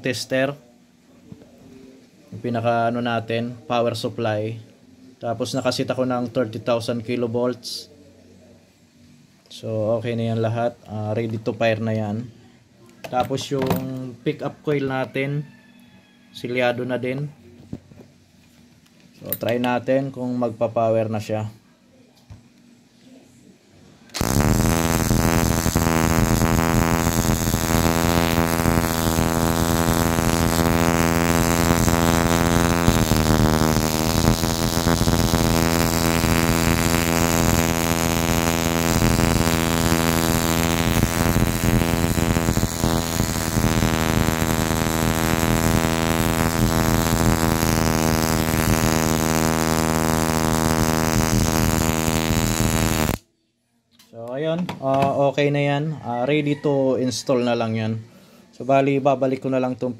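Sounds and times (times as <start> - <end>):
buzzing hum with crackle: 24.1 - 53.3.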